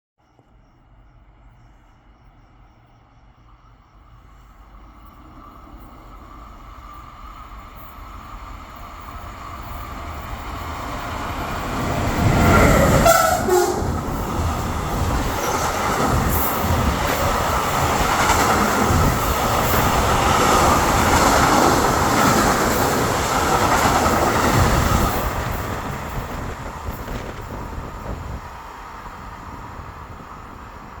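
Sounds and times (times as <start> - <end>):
freight train passing: 0.3 - 31.0
train horn: 12.7 - 14.2.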